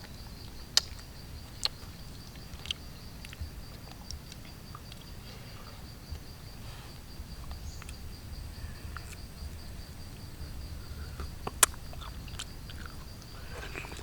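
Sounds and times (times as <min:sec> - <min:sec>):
low rumble: 0:01.2 - 0:13.6
person chewing food: 0:11.1 - 0:14.0.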